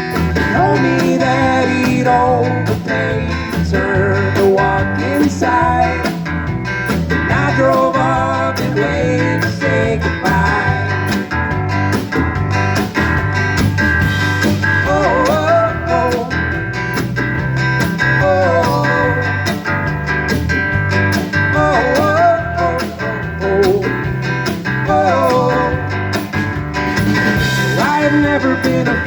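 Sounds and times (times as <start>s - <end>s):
bass line: 0.0s - 29.0s
lead guitar bending notes: 0.0s - 29.0s
drum beat: 9.9s - 29.0s.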